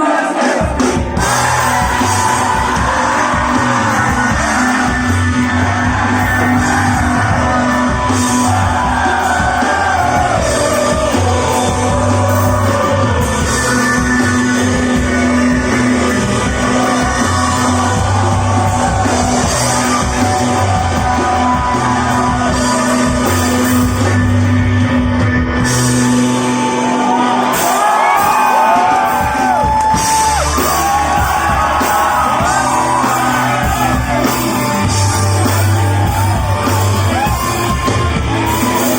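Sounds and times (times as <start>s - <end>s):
person singing: 0.0s - 24.6s
live rock band playing: 0.0s - 38.9s.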